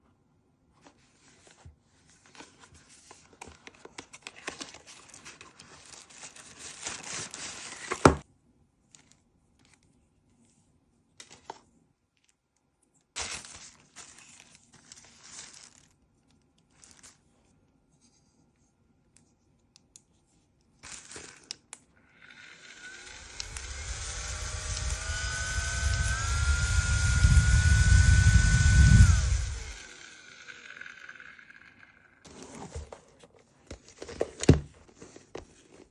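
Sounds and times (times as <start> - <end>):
packaging tearing and crinkling: 4.1 - 8.2, 13.2 - 16.0.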